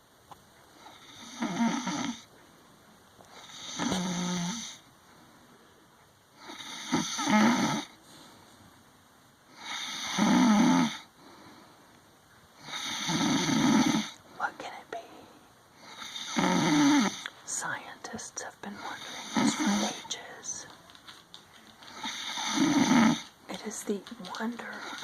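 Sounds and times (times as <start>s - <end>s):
woman snoring: 0.9s - 2.3s, 3.4s - 4.8s, 6.4s - 7.9s, 9.6s - 11.1s, 12.6s - 14.2s, 15.8s - 17.3s, 18.7s - 20.6s, 21.9s - 23.3s.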